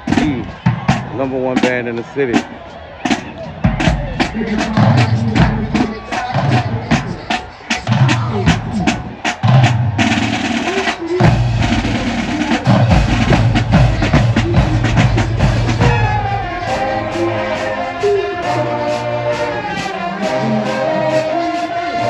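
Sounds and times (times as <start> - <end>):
snare drum rolls: 0.0 - 21.7
bass drums: 3.5 - 10.0, 11.2 - 18.0
brass held chord: 14.6 - 22.0.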